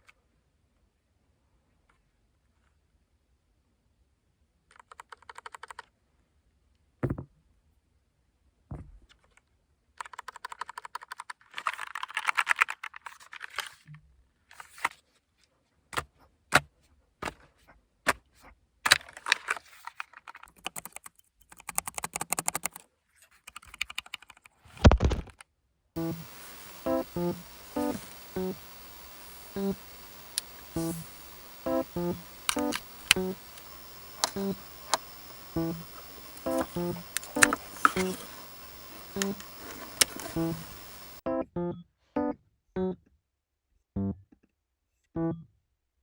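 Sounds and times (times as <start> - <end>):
mechanical keyboard typing: 26.0 - 41.2.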